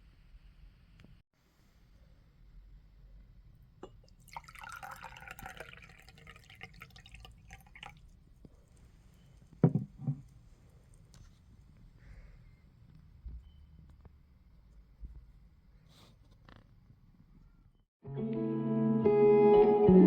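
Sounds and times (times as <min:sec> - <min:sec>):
liquid splashing and dripping: 0:03.8 - 0:08.9.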